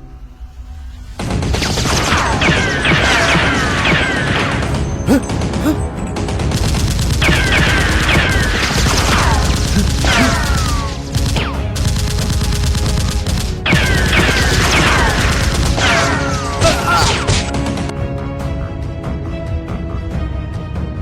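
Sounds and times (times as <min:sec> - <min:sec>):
background music: 0:09.6 - 0:21.0.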